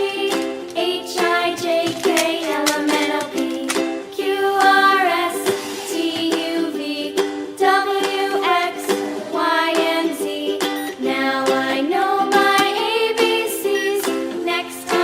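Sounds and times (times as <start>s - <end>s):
upbeat children's music: 0.0s - 15.0s.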